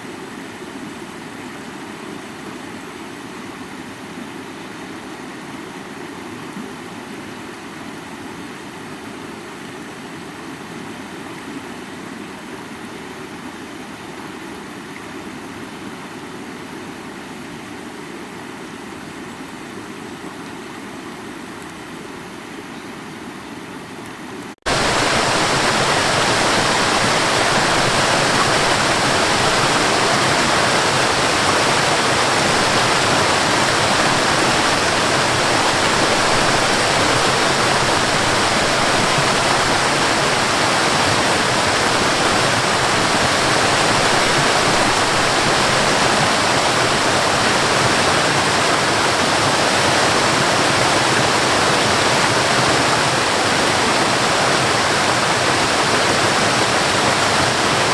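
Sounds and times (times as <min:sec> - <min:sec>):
waterfall rushing: 0:24.6 - 0:57.9.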